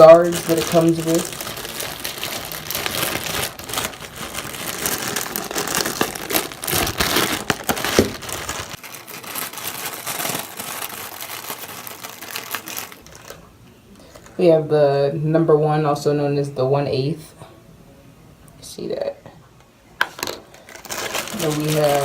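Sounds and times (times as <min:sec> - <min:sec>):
plastic packaging crinkling: 0:00.0 - 0:14.4, 0:20.2 - 0:22.0.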